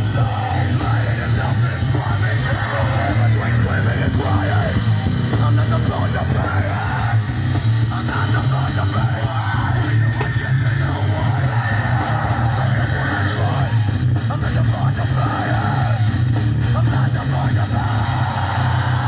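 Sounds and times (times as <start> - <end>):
heavy metal music through speaker: 0.0 - 19.0.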